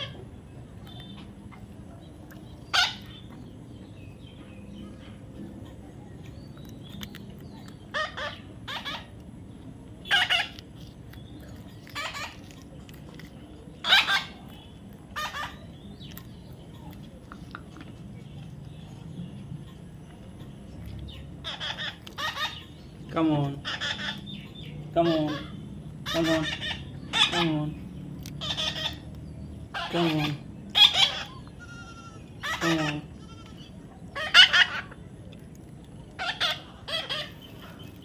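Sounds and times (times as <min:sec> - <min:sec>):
baby parrot squawking: 0:02.7 - 0:03.2, 0:07.9 - 0:09.1, 0:10.0 - 0:10.6, 0:11.8 - 0:12.5, 0:13.8 - 0:14.4, 0:15.2 - 0:15.6, 0:21.4 - 0:22.9, 0:23.6 - 0:27.6, 0:28.4 - 0:29.1, 0:29.7 - 0:35.0, 0:36.2 - 0:37.4.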